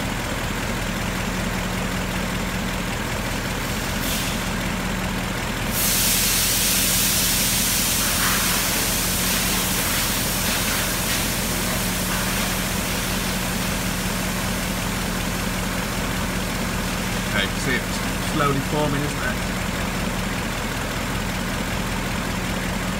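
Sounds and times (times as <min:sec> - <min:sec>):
car engine idling: 0:00.0 - 0:22.9
rushing hiss of air: 0:03.8 - 0:04.5, 0:05.7 - 0:14.1.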